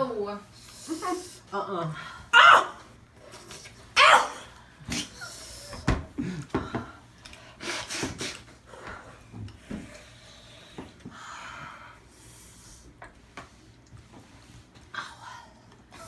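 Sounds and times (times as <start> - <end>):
hard breaths and sniffs: 7.4 - 12.9.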